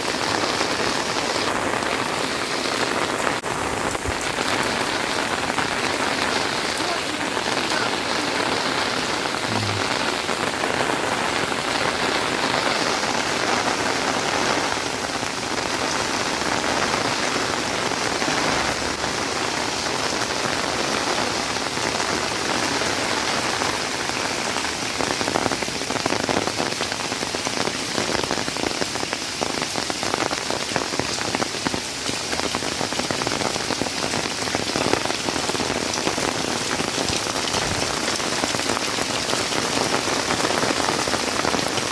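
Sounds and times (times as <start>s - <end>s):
heavy rain on hard surfaces: 0.0s - 41.9s.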